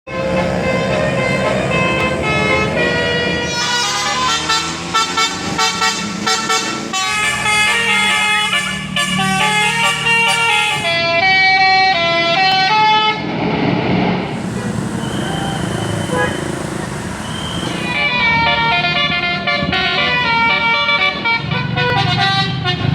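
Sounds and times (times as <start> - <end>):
road noise: 0.0 - 22.9
musical air horn melody: 0.1 - 11.0, 14.3 - 22.2.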